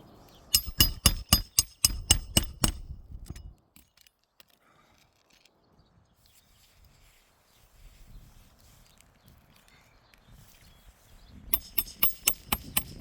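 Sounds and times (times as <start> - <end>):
hammer striking roofing nails: 0.6 - 2.9, 11.6 - 13.0.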